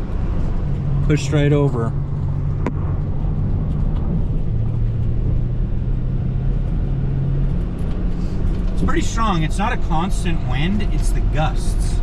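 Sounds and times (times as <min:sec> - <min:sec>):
noisy rumble: 0:00.0 - 0:12.0
vehicle engine hum: 0:00.0 - 0:12.0.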